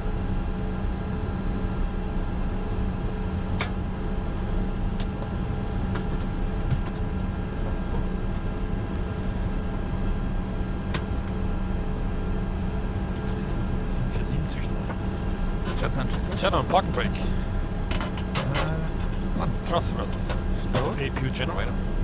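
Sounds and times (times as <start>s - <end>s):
jet engines idling in cockpit: 0.0s - 22.0s.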